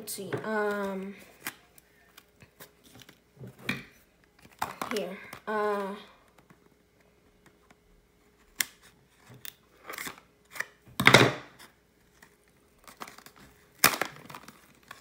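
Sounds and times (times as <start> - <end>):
packaging rustling: 12.0 - 15.0.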